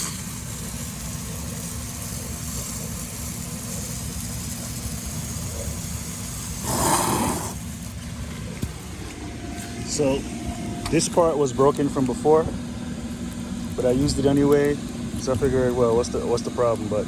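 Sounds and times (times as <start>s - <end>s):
electric blower humming: 6.2s - 15.5s.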